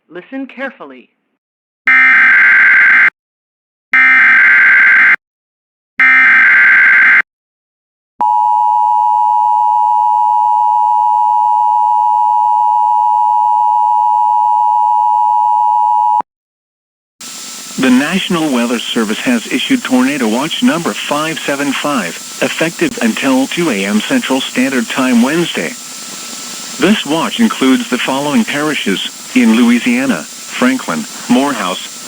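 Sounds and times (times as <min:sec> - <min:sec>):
digital data tone bursts: 0:17.2 - 0:32.0.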